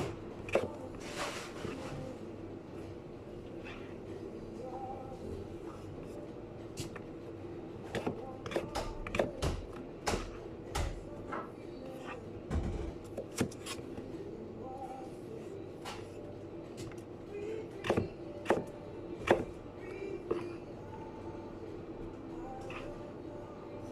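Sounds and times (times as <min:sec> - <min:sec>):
steady machine hum: 0:00.0 - 0:23.9
kitchen knocks and clatters: 0:12.5 - 0:13.6.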